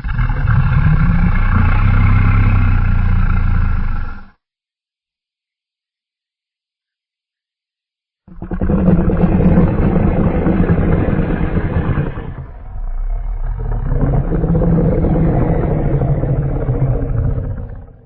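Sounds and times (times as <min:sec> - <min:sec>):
low rasping monster growl: 0:00.0 - 0:04.3, 0:08.3 - 0:18.0.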